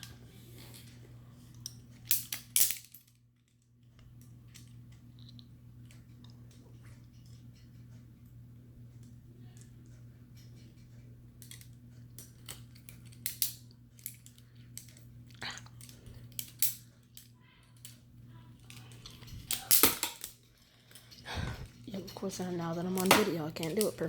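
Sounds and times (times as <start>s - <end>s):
steady low hum: 0.0s - 24.0s
plastic handles clicking and clacking: 21.8s - 24.0s.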